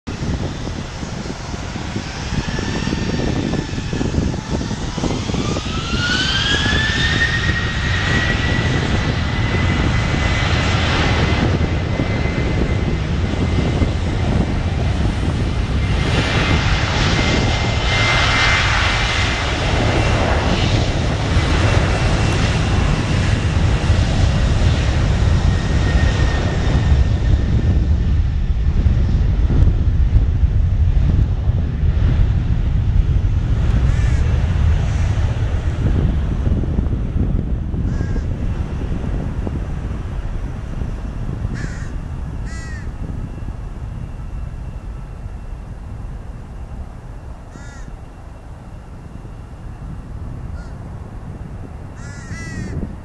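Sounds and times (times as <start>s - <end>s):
jet engines spooling up: 0.2s - 52.0s.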